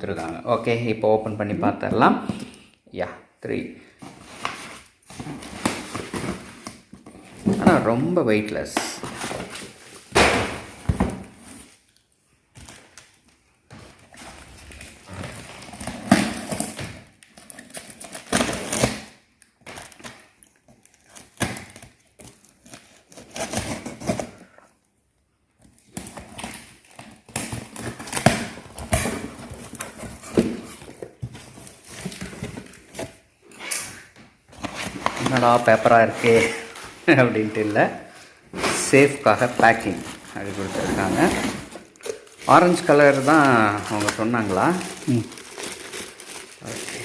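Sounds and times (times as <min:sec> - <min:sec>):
cardboard and paper rustling: 0:04.0 - 0:07.9, 0:08.8 - 0:11.9, 0:19.6 - 0:24.6, 0:25.6 - 0:33.2, 0:34.5 - 0:47.0.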